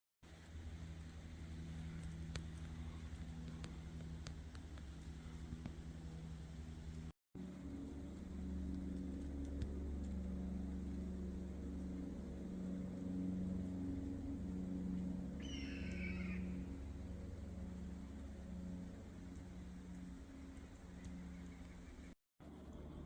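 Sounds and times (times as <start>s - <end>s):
low drone: 0.2s - 23.0s
hawk scream: 15.4s - 16.7s.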